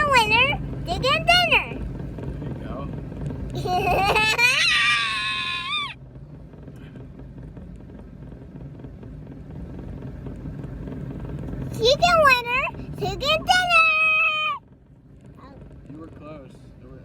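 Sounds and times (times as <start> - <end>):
boat motor rumble: 0.0 - 17.0
child squealing: 3.6 - 6.0.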